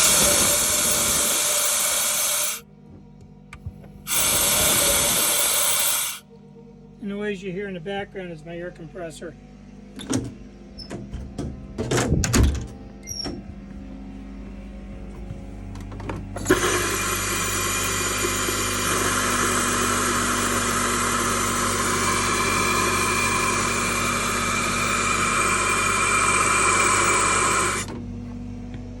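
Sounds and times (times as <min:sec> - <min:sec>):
air compressor humming: 0:00.0 - 0:02.6, 0:03.6 - 0:06.2, 0:12.8 - 0:29.0
compressed air hissing: 0:00.0 - 0:02.6, 0:04.1 - 0:06.2, 0:16.4 - 0:27.9.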